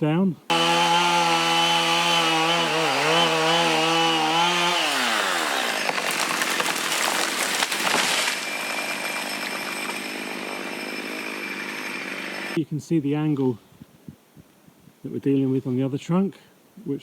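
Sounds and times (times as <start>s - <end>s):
chainsaw engine winding down: 0.5s - 5.8s.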